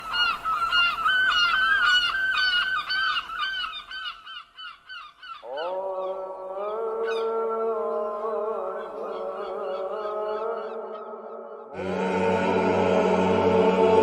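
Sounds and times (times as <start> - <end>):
voices chanting a held drone: 5.6 - 14.0.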